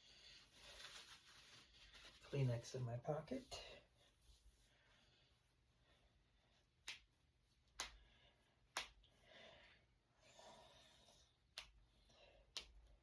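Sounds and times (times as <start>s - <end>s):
soft breaths: 3.4s - 6.8s, 7.5s - 13.0s
knuckles cracking: 6.8s - 9.2s, 11.5s - 13.0s.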